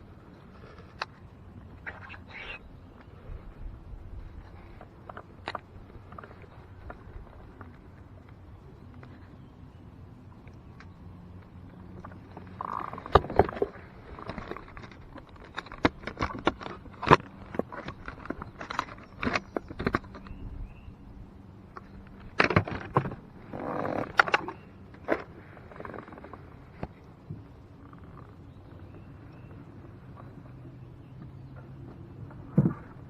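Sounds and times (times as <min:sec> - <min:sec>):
faint steady hum: 0:00.0 - 0:33.0
fishing gear clicks and knocks: 0:04.3 - 0:09.3, 0:10.3 - 0:20.5, 0:21.4 - 0:33.0.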